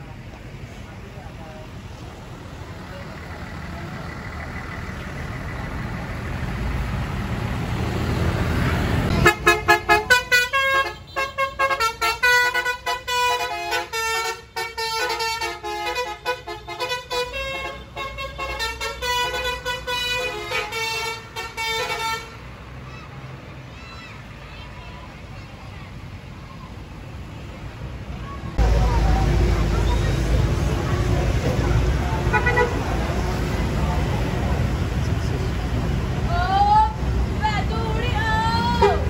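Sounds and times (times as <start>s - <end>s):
bus engine rumble: 0.0s - 39.0s
multi-tone bus horn tune: 9.1s - 22.5s, 32.2s - 33.0s, 38.5s - 39.0s.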